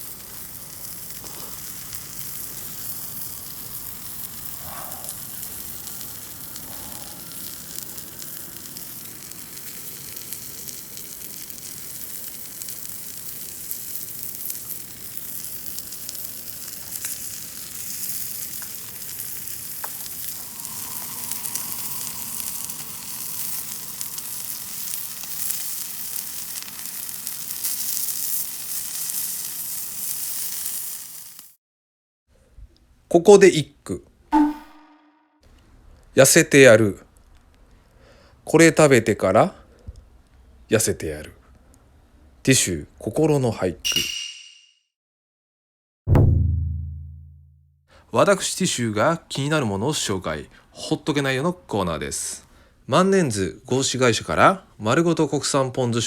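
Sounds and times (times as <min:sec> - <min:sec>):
meat sizzling: 0:00.0 - 0:31.6.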